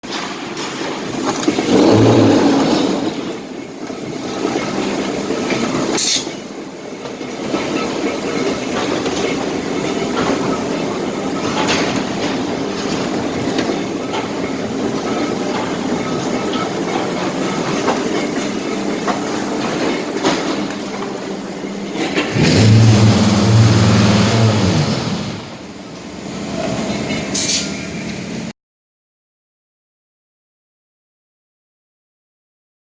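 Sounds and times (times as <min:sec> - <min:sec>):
block-making machine clattering: 0:00.0 - 0:25.8
loud low hum: 0:22.3 - 0:25.8.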